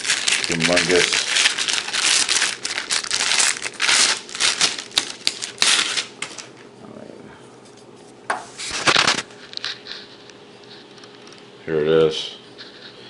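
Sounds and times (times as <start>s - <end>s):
packaging rustling: 0.0s - 6.6s, 8.6s - 10.1s.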